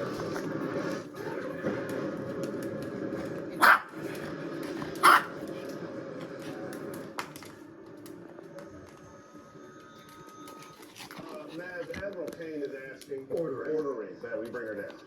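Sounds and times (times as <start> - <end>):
dog barking: 3.6 - 4.0, 5.0 - 5.4.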